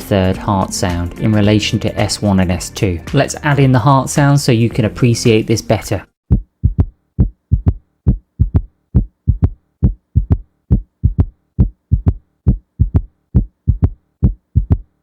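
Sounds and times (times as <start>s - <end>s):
heartbeat thumps: 6.2s - 15.0s.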